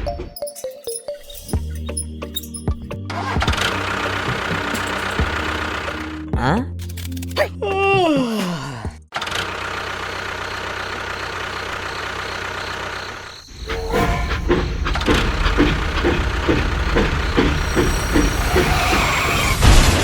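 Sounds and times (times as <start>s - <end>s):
louder engine with regular beat: 2.8s - 6.5s, 13.6s - 19.6s
engine running steadily: 3.1s - 6.3s, 9.2s - 20.0s.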